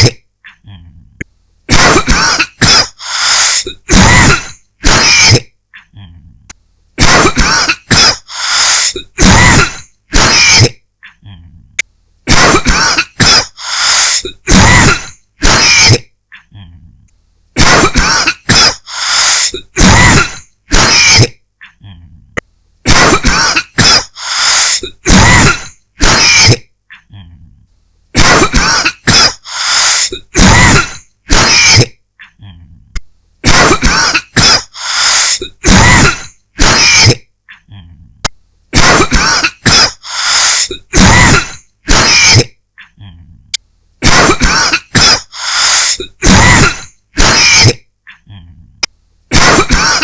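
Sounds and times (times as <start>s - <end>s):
person coughing: 0.0s - 0.8s, 1.7s - 6.2s, 7.0s - 11.4s, 12.3s - 16.7s, 17.6s - 21.4s, 22.9s - 26.7s, 28.2s - 32.0s, 33.4s - 37.8s, 38.8s - 43.2s, 44.0s - 48.4s, 49.3s - 50.0s.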